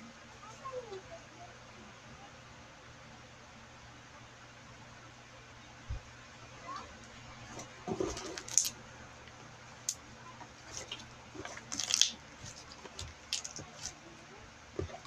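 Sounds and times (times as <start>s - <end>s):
slime squished by hand: 10.7s - 14.0s.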